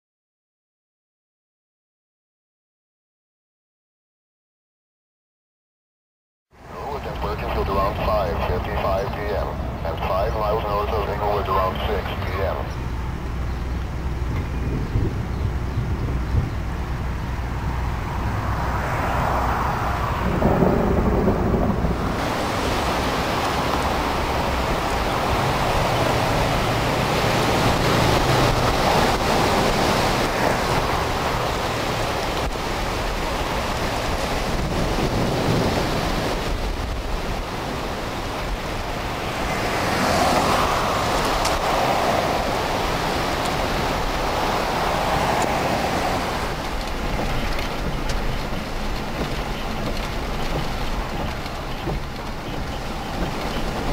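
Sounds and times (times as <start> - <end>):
heavy rain: 6.6 - 53.9
thunder rumbling: 14.0 - 53.9.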